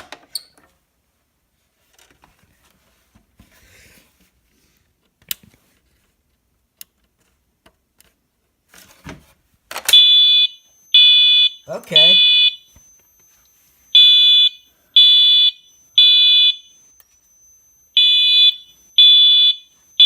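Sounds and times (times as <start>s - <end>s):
fire alarm horn: 9.9s - 20.0s.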